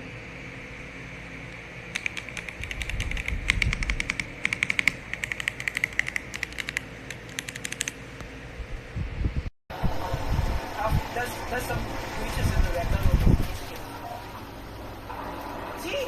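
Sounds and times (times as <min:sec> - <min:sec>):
keyboard key clicks: 0:01.9 - 0:08.0.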